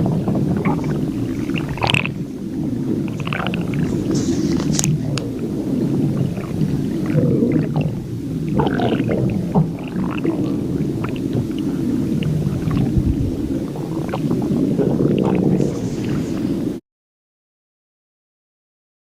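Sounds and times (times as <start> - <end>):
stomach growling: 0.0 - 16.8.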